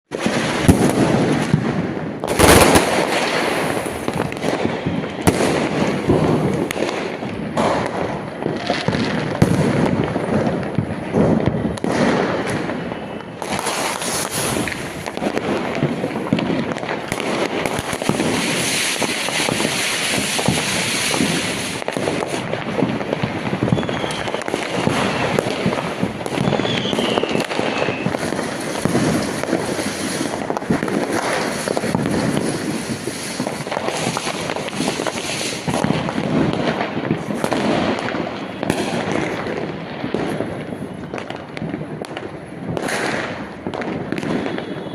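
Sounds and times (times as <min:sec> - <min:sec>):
firecrackers crackling and banging: 0:00.0 - 0:44.9
short firework whistles: 0:11.7 - 0:15.1, 0:23.5 - 0:30.4, 0:44.2 - 0:44.9.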